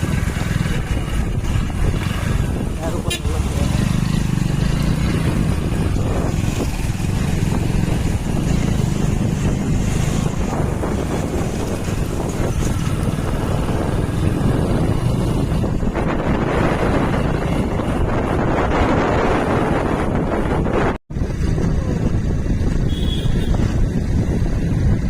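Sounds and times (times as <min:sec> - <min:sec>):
motorbike engine drone: 0:00.0 - 0:25.0
wind rushing over microphone: 0:00.0 - 0:25.0.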